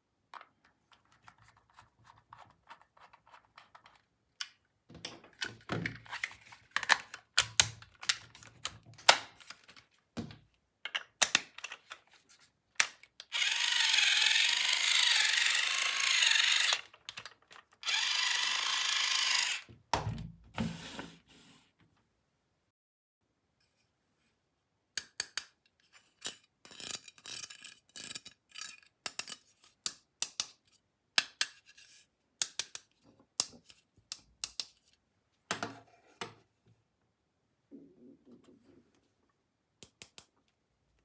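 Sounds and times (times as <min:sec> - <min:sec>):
toy power tool buzzing whir: 0:13.2 - 0:17.2, 0:17.8 - 0:19.7.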